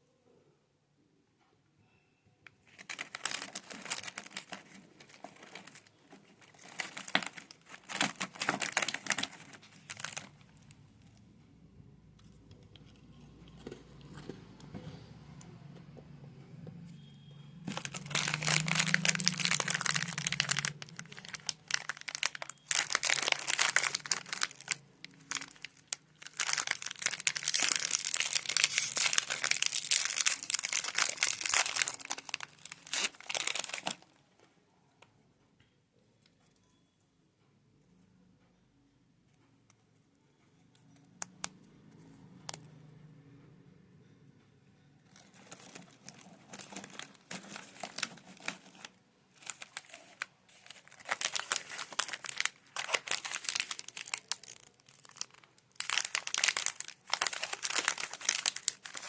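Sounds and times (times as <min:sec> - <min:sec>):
snack wrappers crinkling: 0:02.6 - 0:11.2, 0:17.6 - 0:34.2, 0:45.1 - 0:59.0.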